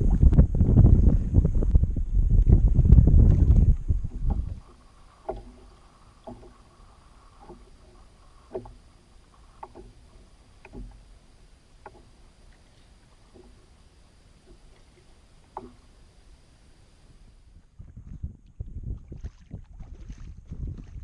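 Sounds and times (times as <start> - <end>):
wind buffeting microphone: 0.0 - 11.2, 17.5 - 21.0
knocks and taps on kayak: 2.4 - 6.7, 7.4 - 11.2, 11.8 - 12.2, 15.5 - 15.9
water lapping: 2.4 - 21.0.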